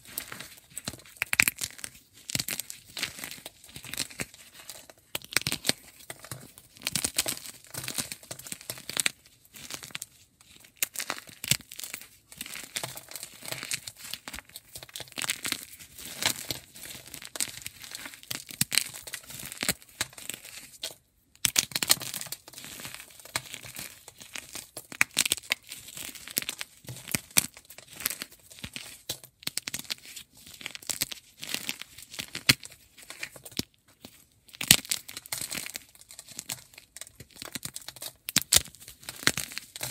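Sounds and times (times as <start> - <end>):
chalk blocks crackling and crunching: 0.0 - 20.9, 21.5 - 39.9.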